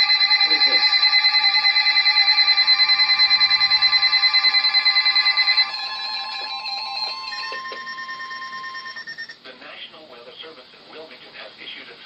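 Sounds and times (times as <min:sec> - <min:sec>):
fast pulsing beeps: 0:00.0 - 0:06.3
weather radio alarm tones: 0:00.0 - 0:09.4.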